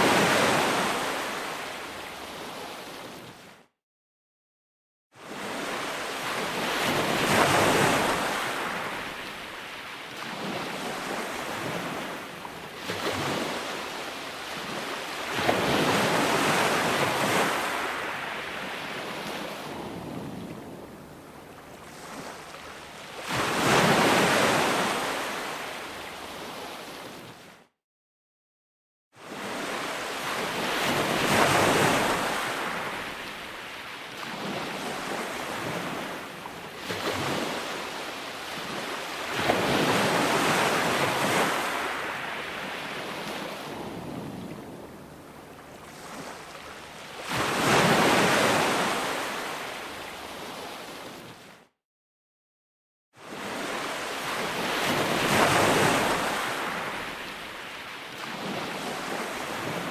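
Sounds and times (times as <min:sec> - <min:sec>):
ocean waves breaking on shore: 0:00.0 - 0:03.7, 0:05.2 - 0:27.7, 0:29.2 - 0:51.7, 0:53.2 - 0:59.9.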